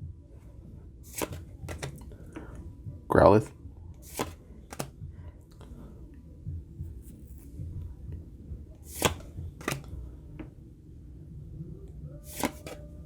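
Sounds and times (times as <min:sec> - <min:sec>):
trading cards sliding: 0:01.0 - 0:02.1, 0:04.0 - 0:04.9, 0:08.8 - 0:09.9, 0:12.2 - 0:13.0
sharp card flicks: 0:01.1 - 0:02.0, 0:04.0 - 0:05.0, 0:08.9 - 0:09.9, 0:12.2 - 0:12.8.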